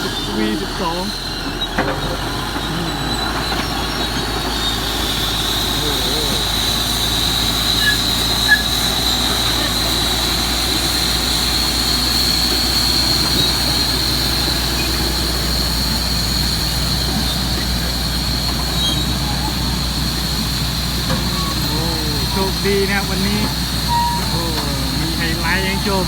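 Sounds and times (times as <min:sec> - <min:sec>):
bulldozer diesel engine: 0:00.0 - 0:26.0
high-pitched whine: 0:21.3 - 0:26.0.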